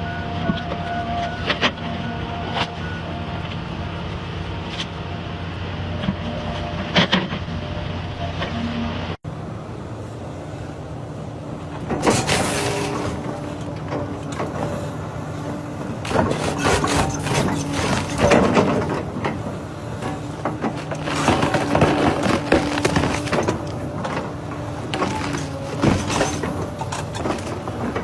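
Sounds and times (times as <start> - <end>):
wood-cutting machine engine running: 11.6 - 28.0.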